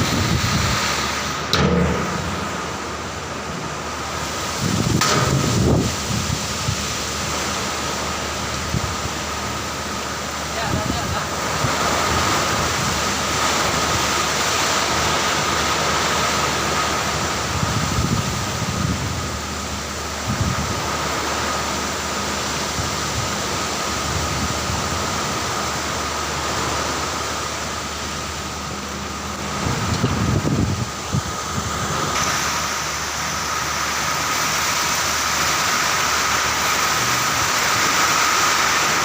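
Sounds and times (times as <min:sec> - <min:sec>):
wind gusting: 0:00.0 - 0:07.5
heavy rain pouring: 0:00.0 - 0:39.0.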